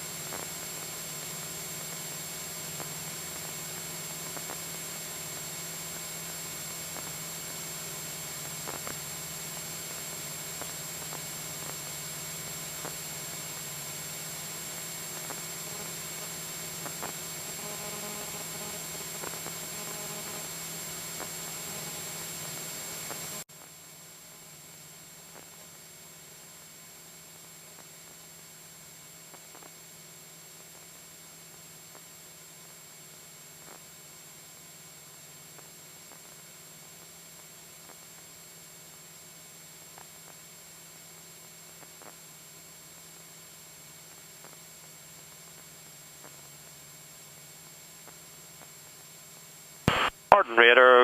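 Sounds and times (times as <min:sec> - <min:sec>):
aircraft cabin hiss and drone: 0:49.9 - 0:51.0.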